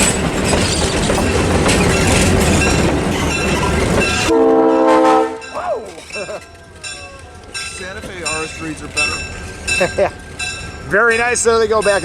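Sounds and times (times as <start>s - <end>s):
train rumbling on rails: 0.0s - 12.0s
locomotive horn blast: 4.3s - 5.6s.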